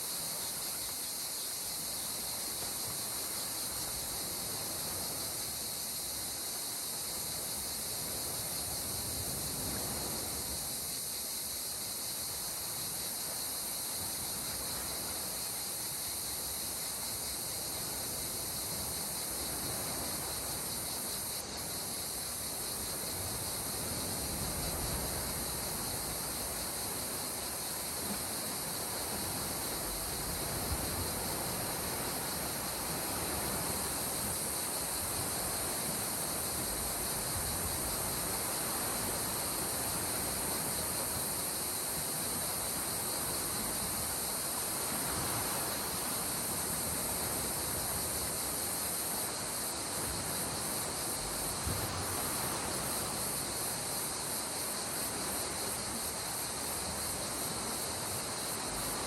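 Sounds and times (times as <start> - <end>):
high-pitched insect chorus: 0.0 - 59.0
sea water washing at shore: 17.1 - 59.0.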